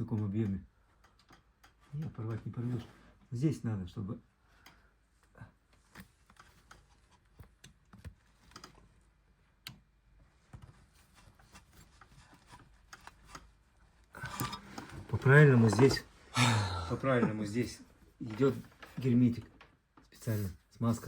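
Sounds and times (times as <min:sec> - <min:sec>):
hand tools clicking and tapping: 0:00.0 - 0:02.5.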